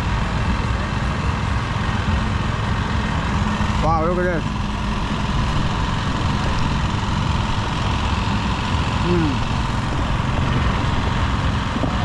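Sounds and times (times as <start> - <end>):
low engine-like rumble: 0.0 - 12.0
person's voice: 9.0 - 9.4.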